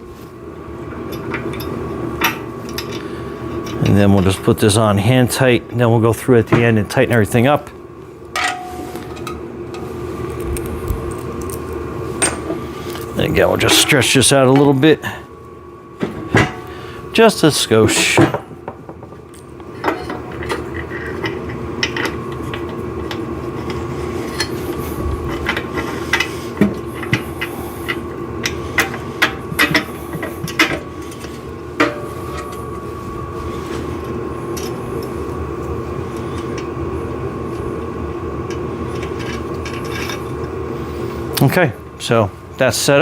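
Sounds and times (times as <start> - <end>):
steady hum: 0.0 - 43.0
metal tools clinking and knocking: 8.4 - 9.3.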